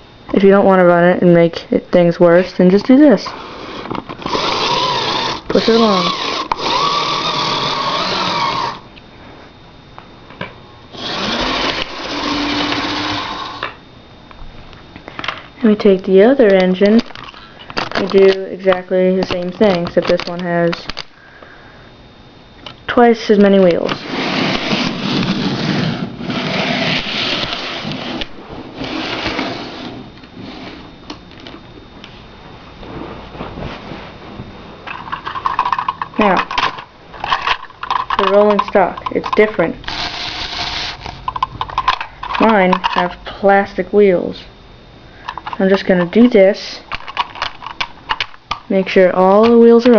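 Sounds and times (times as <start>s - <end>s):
model train motor whirring: 3.8s - 8.8s, 11.0s - 13.7s, 39.8s - 41.2s
model train whirring on track: 4.2s - 8.8s.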